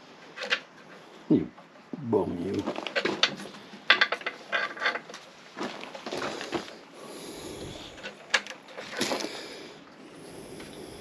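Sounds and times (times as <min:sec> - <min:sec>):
clicks and knocks of hand tools: 0:02.6 - 0:06.7, 0:07.9 - 0:09.3.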